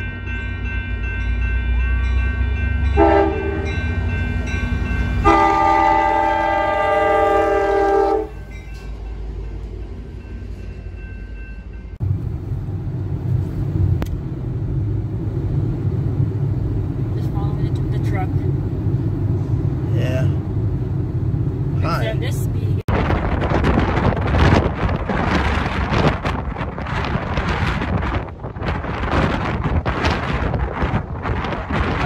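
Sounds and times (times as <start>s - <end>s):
horn sounding a chord: 3.0s - 3.8s, 5.1s - 8.4s
steady low rumble: 9.0s - 32.0s.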